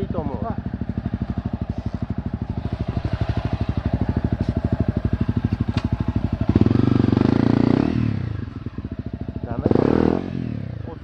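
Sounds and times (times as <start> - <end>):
motorcycle engine idling and revving: 0.0 - 11.0.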